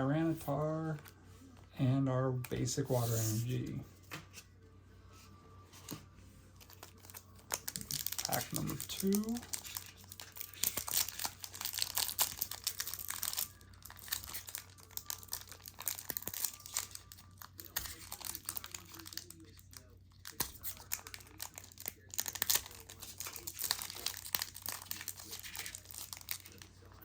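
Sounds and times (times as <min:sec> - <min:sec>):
foil wrapper tearing and crinkling: 0:06.6 - 0:27.0.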